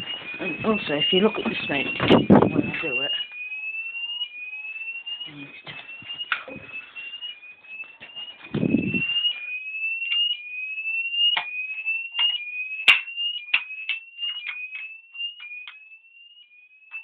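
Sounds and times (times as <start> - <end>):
fire alarm sweep tone: 0.0 - 17.0.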